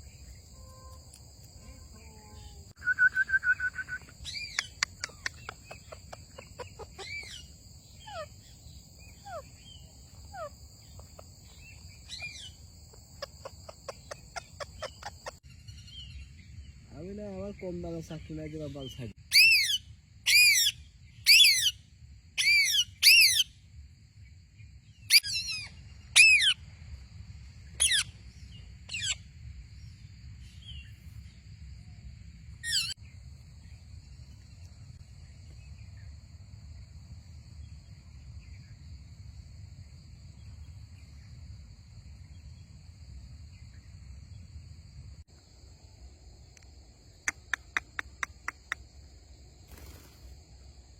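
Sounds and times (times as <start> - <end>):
crickets chirring: 0.0 - 50.9
parrot squawking: 4.2 - 8.4, 12.1 - 15.4.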